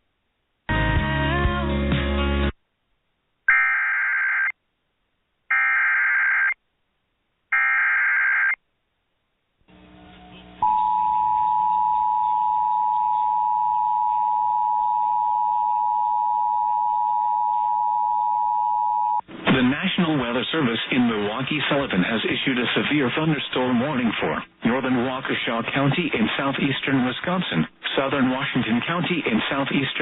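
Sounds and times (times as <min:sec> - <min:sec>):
two-tone attention signal: 0:10.4 - 0:19.2
faint radio hiss: 0:19.3 - 0:30.0.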